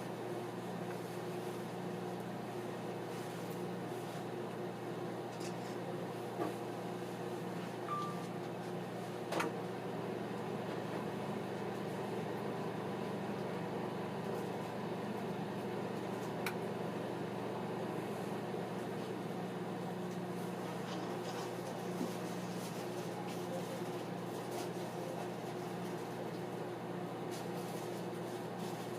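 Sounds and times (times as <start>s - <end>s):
microwave oven humming: 0.0s - 28.9s
brief high tone: 7.9s - 8.4s.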